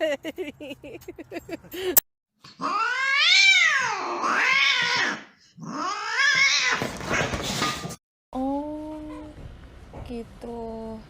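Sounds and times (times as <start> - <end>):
cat meowing: 2.6 - 6.8.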